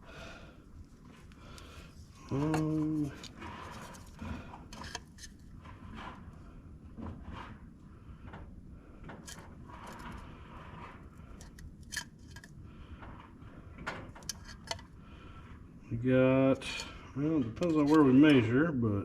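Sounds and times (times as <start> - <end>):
tools clicking and tapping: 14.2 - 14.9.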